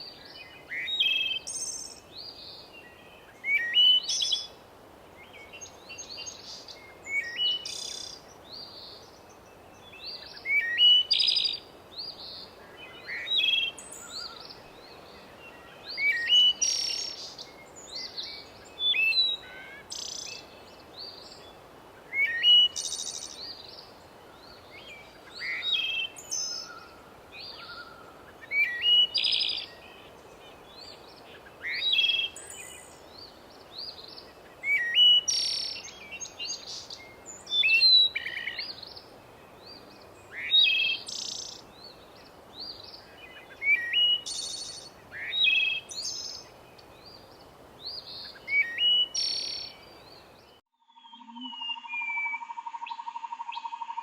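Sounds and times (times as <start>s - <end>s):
faint steady hiss: 0.0s - 50.6s
songbird singing: 0.0s - 54.0s.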